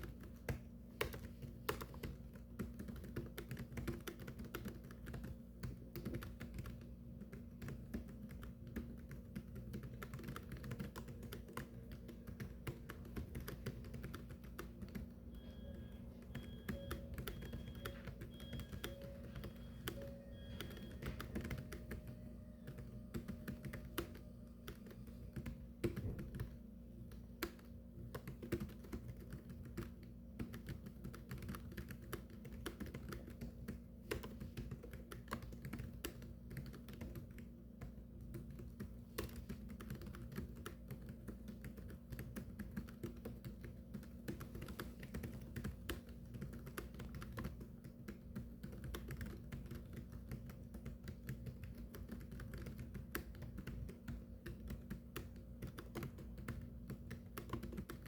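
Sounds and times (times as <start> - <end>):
low steady hum: 0.0 - 58.0
typing on computer keyboard: 0.0 - 58.0.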